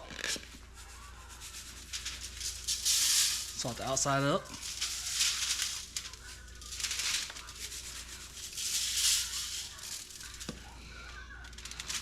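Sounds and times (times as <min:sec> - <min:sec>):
salt pattering onto fish skin: 0:00.0 - 0:10.6.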